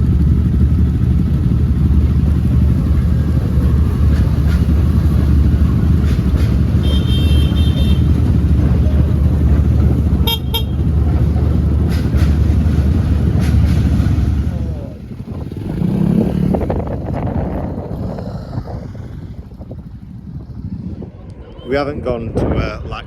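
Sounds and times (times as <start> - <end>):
motorcycle engine rumble: 0.0 - 23.0
wind buffeting microphone: 0.0 - 23.0
horn toot: 6.4 - 8.6, 10.2 - 11.0.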